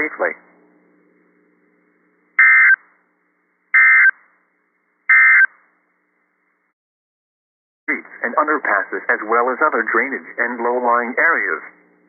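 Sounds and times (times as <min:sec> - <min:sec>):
screeching data tones: 0:02.4 - 0:03.0, 0:03.8 - 0:04.3, 0:05.1 - 0:05.6.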